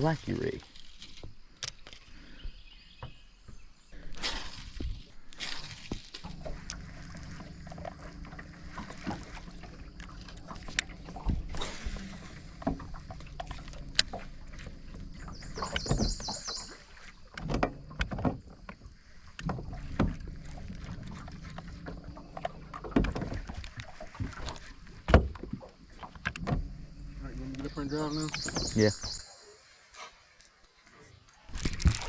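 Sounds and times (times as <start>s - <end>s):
low steady hum: 4.0s - 28.4s
fishing gear knocking in a boat: 17.3s - 26.8s.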